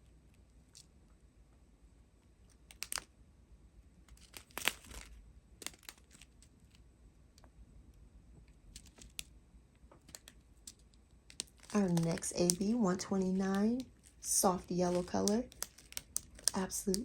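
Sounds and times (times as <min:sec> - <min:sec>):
plastic bags crinkling: 0:04.1 - 0:06.8, 0:11.3 - 0:17.0.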